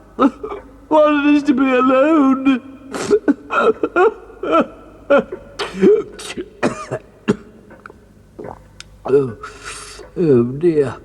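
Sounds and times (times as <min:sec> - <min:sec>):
man sobbing and coughing: 0:00.1 - 0:01.0, 0:02.9 - 0:07.8.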